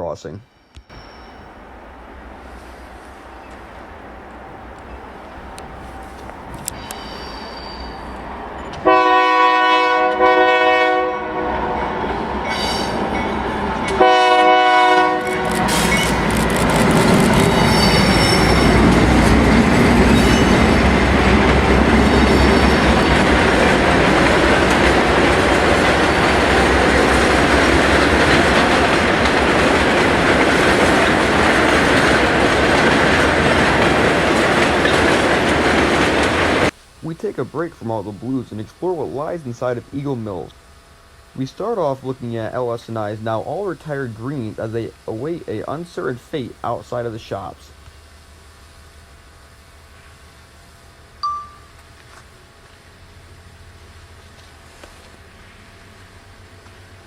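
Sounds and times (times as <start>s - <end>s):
train rumbling past: 0.5s - 51.6s, 52.3s - 57.0s
locomotive air horn blasts: 8.8s - 11.7s, 14.0s - 15.9s.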